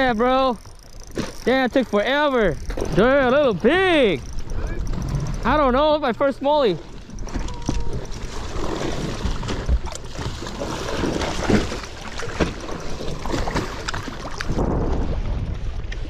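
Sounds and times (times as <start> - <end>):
water slapping against boat hull: 6.8 - 16.0
wind buffeting microphone: 13.2 - 16.0.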